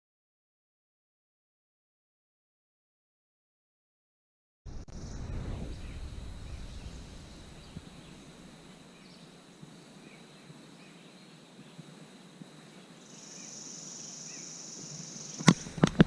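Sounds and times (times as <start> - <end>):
low rumble: 4.7 - 9.0
steady background hiss: 4.7 - 16.0
faint high chirps: 12.7 - 15.6.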